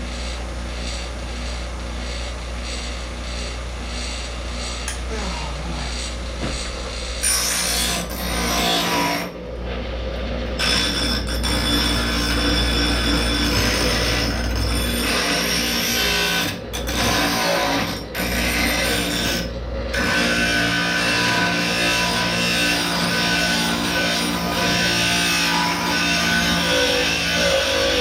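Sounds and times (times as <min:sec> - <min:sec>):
angle grinder grinding steel: 0:00.0 - 0:09.4, 0:10.5 - 0:28.0.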